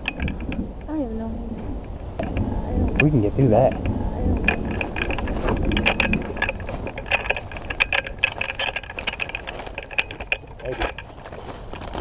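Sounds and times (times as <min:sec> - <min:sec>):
twigs crackling and snapping: 0:03.7 - 0:12.0.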